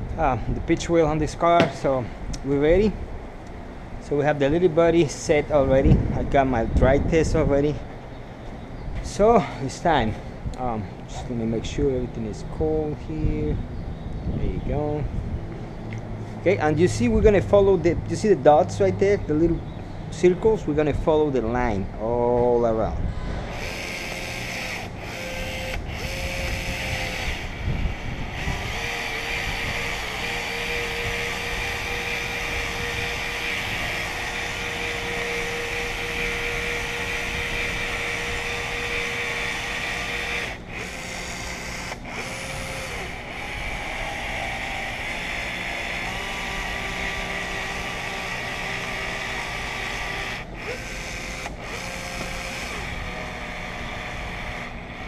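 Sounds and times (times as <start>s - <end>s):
caulking gun motor whirring: 23.4s - 55.0s.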